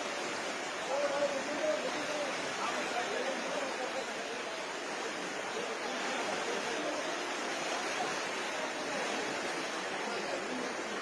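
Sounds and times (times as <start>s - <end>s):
floodwater rushing: 0.0s - 11.0s.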